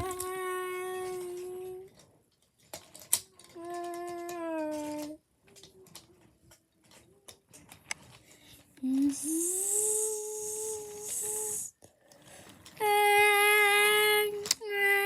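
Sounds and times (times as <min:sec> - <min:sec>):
breathy hiss: 0:08.3 - 0:12.8.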